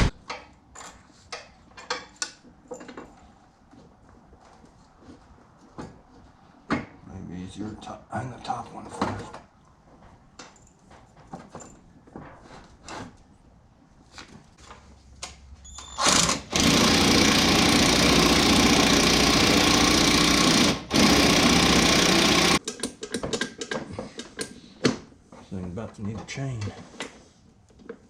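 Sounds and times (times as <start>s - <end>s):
impact wrench hammering: 16.0s - 22.9s.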